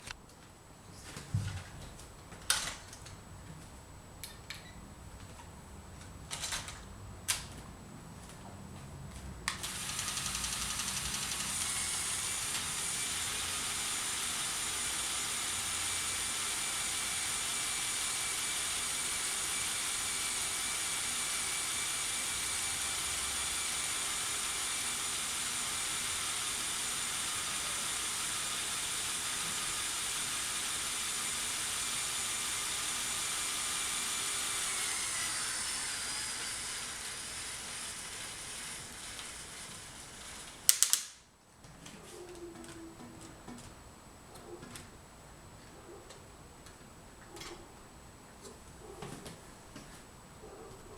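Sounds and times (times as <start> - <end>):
toy pneumatic system whir and hiss: 9.6 - 12.6, 34.7 - 41.1
sharp mechanical clicks: 40.7 - 41.2.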